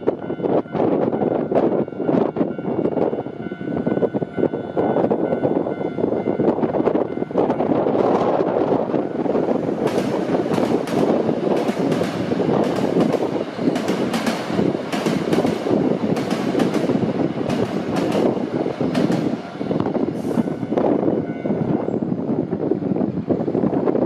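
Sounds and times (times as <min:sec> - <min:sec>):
train wheels rumbling on rails: 0:00.0 - 0:24.0
wheels clacking over rail joints: 0:09.3 - 0:19.8.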